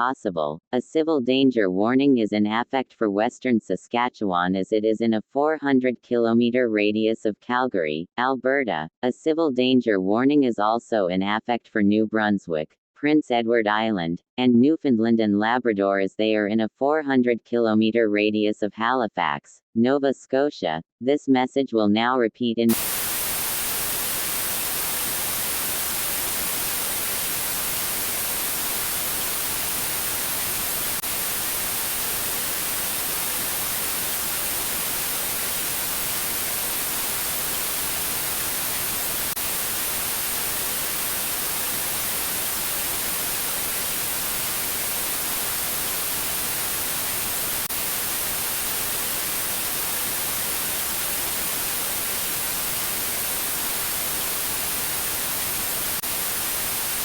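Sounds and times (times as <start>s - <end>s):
television static hiss: 22.7s - 57.0s.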